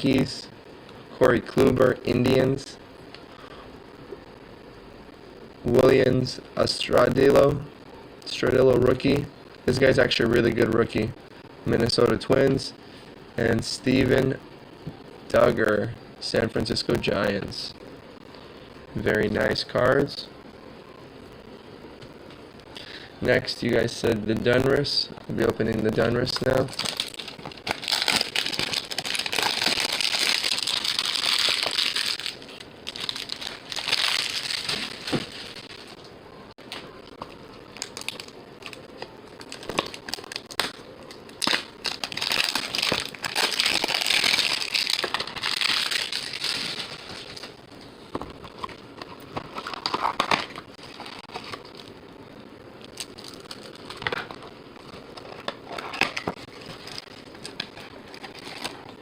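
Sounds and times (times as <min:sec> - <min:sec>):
packaging crinkling: 0:26.3 - 0:36.0, 0:36.7 - 0:52.0, 0:52.8 - 0:59.0.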